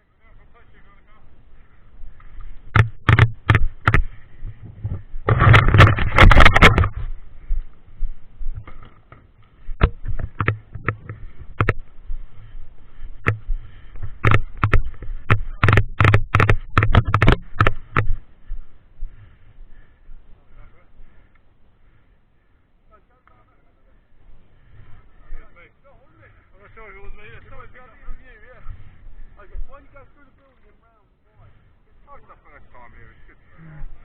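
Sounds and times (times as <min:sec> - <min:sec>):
sharp clicks and knocks: 0:02.2 - 0:04.2, 0:04.8 - 0:07.1, 0:08.5 - 0:11.9, 0:13.1 - 0:18.2.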